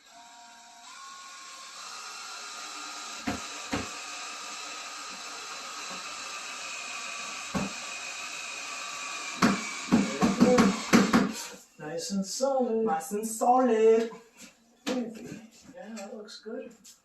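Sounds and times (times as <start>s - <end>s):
power drill driving a screw: 0.0s - 11.5s.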